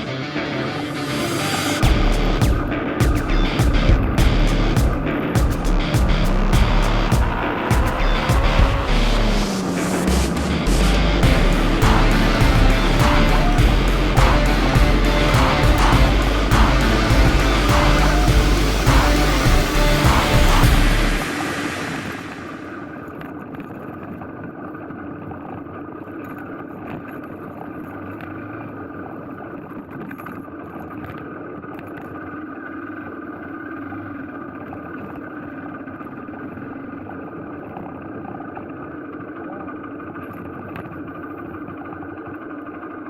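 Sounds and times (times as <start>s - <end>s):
motorcycle engine running steadily: 10.8s - 21.1s.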